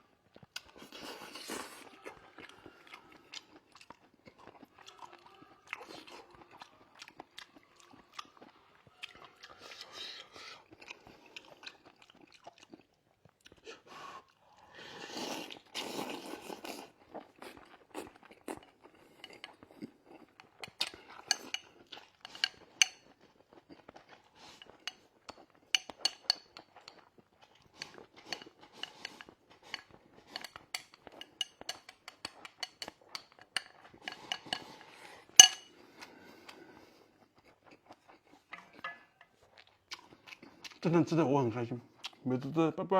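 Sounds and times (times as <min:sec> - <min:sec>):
person chewing: 0:00.3 - 0:40.9, 0:41.9 - 0:42.3
chopsticks clicking against bowl: 0:20.4 - 0:23.0, 0:24.9 - 0:27.0, 0:27.8 - 0:34.8, 0:35.4 - 0:35.7.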